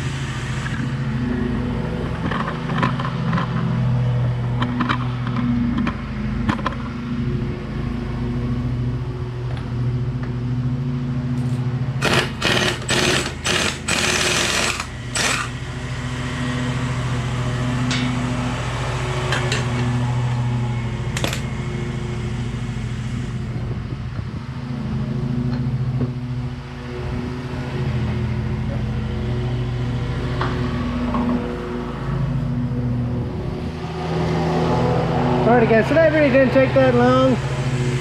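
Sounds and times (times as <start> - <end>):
machine hum: 0.0 - 38.0
impact wrench bursts: 11.4 - 16.2, 21.0 - 23.5.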